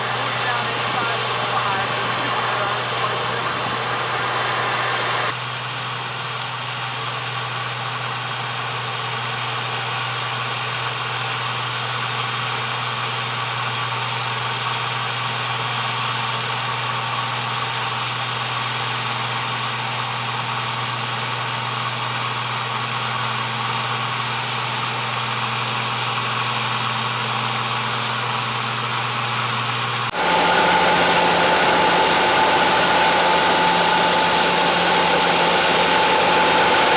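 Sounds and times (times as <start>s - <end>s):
combine harvester running: 0.0s - 5.4s, 29.6s - 36.9s.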